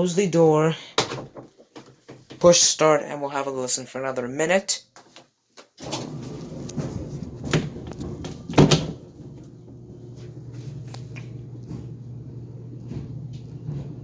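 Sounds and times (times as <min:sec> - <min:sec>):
clothes dryer tumbling: 0:05.8 - 0:14.0.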